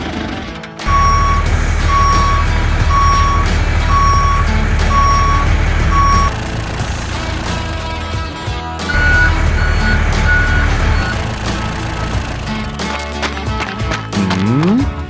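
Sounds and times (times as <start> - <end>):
low engine rumble: 0.8 - 12.8
truck reversing alarm beeping: 0.9 - 8.2, 8.8 - 12.8.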